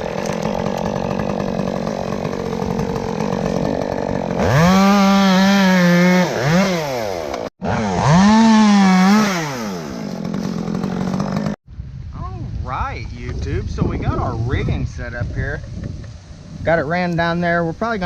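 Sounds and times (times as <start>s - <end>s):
chainsaw idling and revving: 0.0s - 11.6s.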